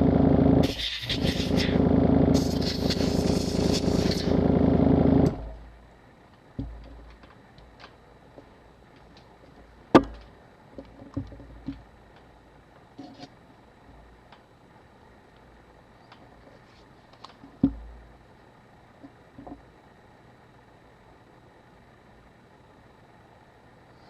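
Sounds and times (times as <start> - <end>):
air blower rushing: 0.0 - 5.6.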